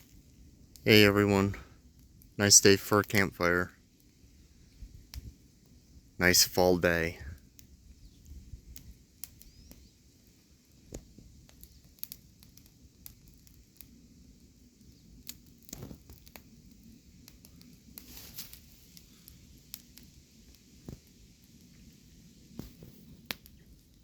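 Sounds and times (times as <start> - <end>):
campfire crackling: 0.0 - 24.0
brief hiss from fire: 17.2 - 21.2.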